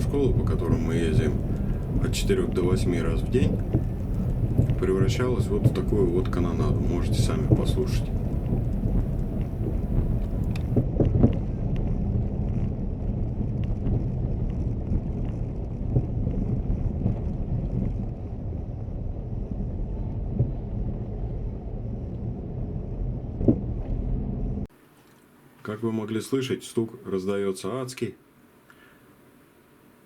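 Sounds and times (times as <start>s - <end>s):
suspension knocking: 0.0s - 12.6s, 23.3s - 24.4s
low road rumble: 0.0s - 24.7s.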